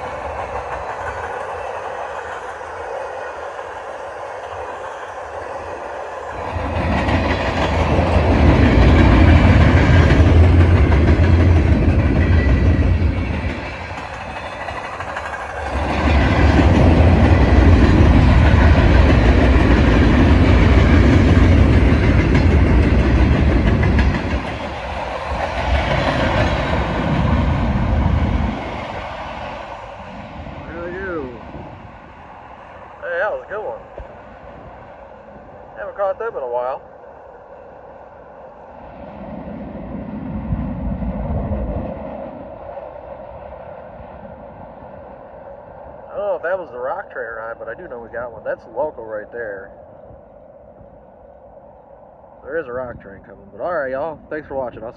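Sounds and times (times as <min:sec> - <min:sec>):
wheels clacking over rail joints: 0:00.0 - 0:29.8
freight train rumbling past: 0:00.0 - 0:54.9.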